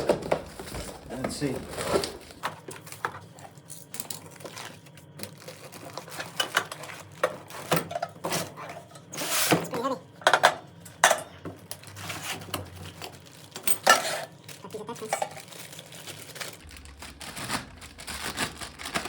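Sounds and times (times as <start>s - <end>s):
faint low hum: 11.9s - 19.0s
metal tools clinking and clanking: 13.5s - 14.4s.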